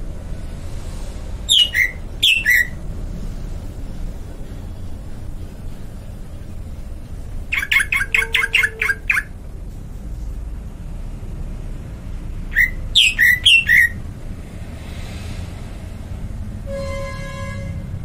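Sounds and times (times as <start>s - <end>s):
low steady rumble: 0.0s - 14.7s
bird chirping: 1.5s - 2.8s, 7.4s - 9.3s, 12.5s - 14.0s.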